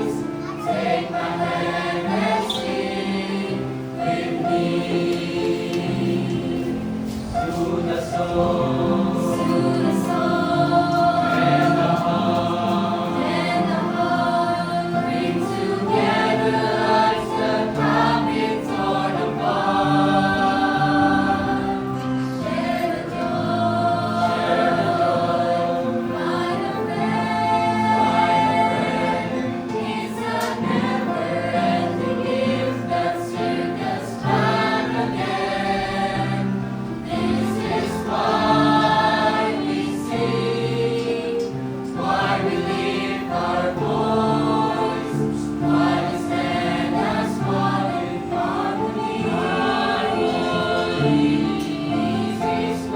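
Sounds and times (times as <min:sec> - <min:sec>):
choir singing: 0:00.0 - 0:52.9.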